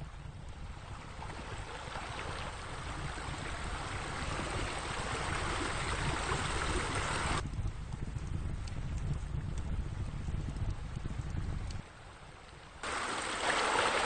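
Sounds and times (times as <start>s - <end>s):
water splashing in a pool: 0.7s - 7.4s, 12.8s - 14.0s.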